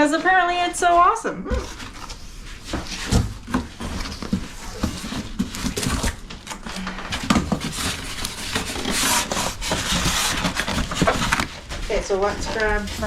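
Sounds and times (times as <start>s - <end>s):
packaging rustling: 1.6s - 13.0s.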